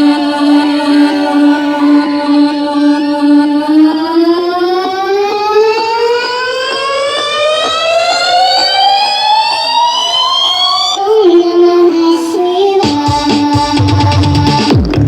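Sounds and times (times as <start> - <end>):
rising synthesizer riser tone: 0.0 - 11.4.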